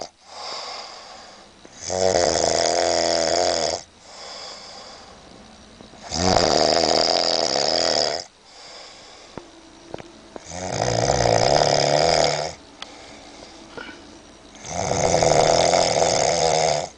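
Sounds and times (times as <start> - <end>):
loud snoring: 0.0 - 5.0, 6.0 - 8.9, 10.4 - 13.1, 14.6 - 16.9
quiet breathing: 0.1 - 1.8, 3.9 - 6.1, 8.4 - 10.6, 11.2 - 16.2.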